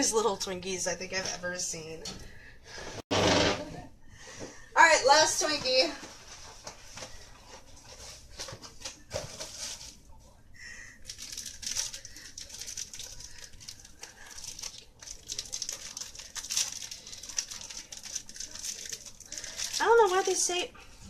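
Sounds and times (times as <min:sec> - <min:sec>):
plastic packaging crinkling: 0:07.9 - 0:10.1, 0:11.0 - 0:20.6.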